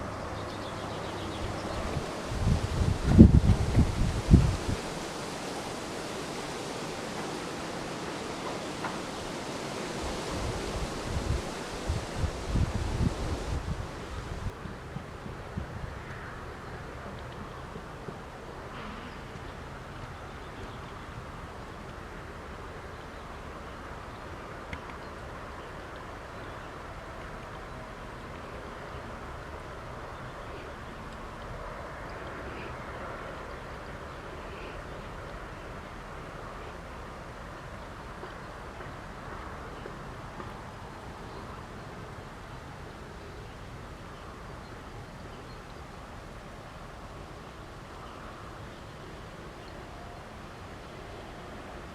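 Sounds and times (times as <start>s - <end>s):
soft hiss: 0.0s - 14.6s
wind and rustling foliage: 0.0s - 51.9s.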